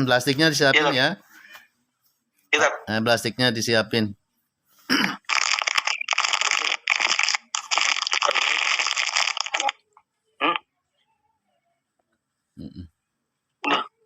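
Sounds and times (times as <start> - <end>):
plastic bag crinkling: 5.2 - 9.8.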